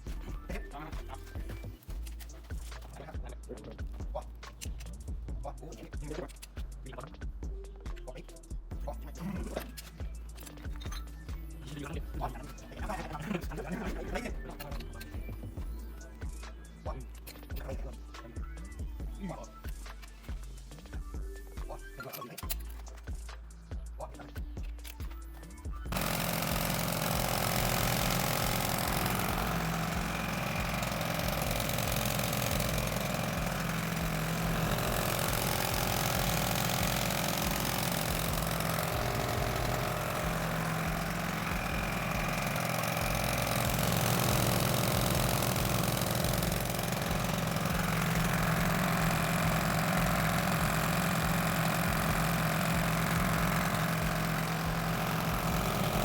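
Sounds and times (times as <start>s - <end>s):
pump engine idling: 25.9s - 56.0s.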